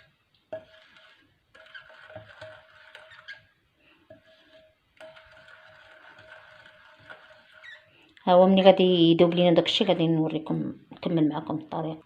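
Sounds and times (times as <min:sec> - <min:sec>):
spoon scraping in bowl: 0:00.0 - 0:10.2.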